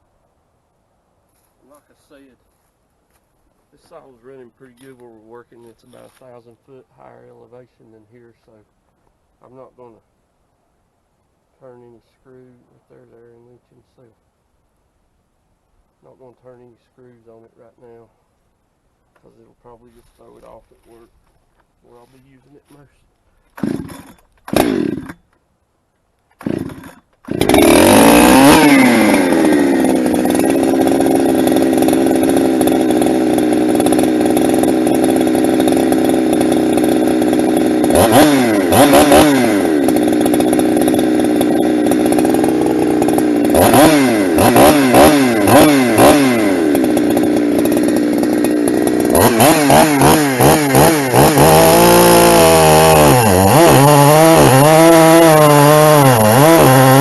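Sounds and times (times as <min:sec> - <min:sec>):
chainsaw revving: 0:23.5 - 0:25.2, 0:26.3 - 0:57.0.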